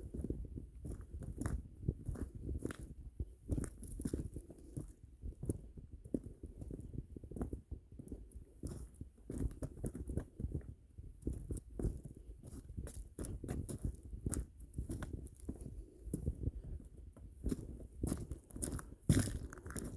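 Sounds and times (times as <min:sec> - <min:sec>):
footsteps crunching on gravel: 0:17.5 - 0:19.9.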